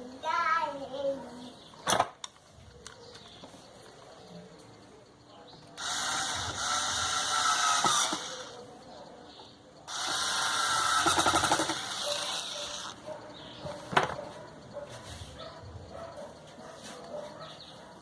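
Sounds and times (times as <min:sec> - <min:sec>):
power tool motor whining: 0:05.8 - 0:08.6, 0:09.9 - 0:13.0.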